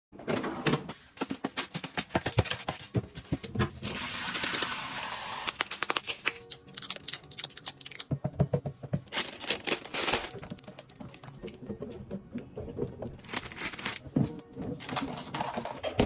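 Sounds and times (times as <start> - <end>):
crinkling: 9.1 - 11.2, 13.2 - 16.0.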